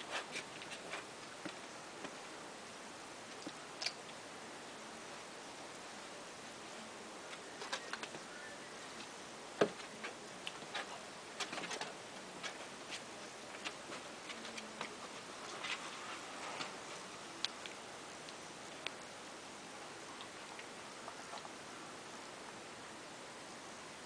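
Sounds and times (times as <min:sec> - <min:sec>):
puppies playing with light clicks: 0:03.3 - 0:04.2.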